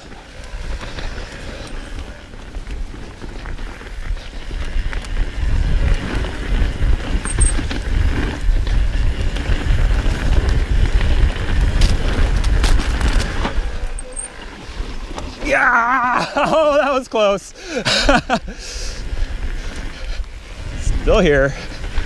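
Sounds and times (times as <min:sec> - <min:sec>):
wind buffeting microphone: 0:00.0 - 0:15.6, 0:17.6 - 0:22.0
tyres rumbling over dirt and rock: 0:00.0 - 0:17.4.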